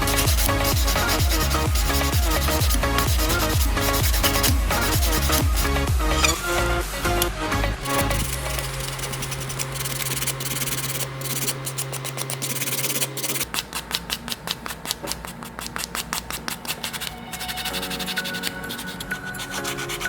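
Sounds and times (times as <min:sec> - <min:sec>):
hand-sanding strokes: 0:00.0 - 0:05.9, 0:07.8 - 0:20.0
small electric tool motor humming: 0:07.8 - 0:13.5.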